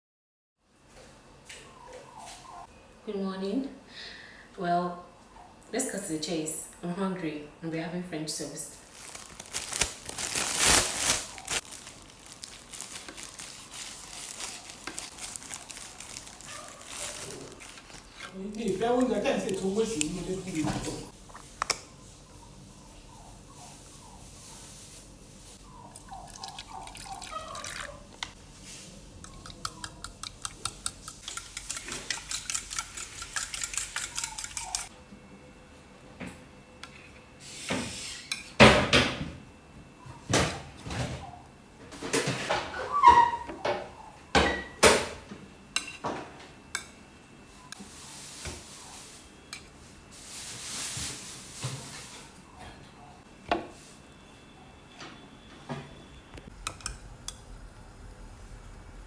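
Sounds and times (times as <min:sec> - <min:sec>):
dishes and cutlery clinking: 0:30.9 - 0:34.9.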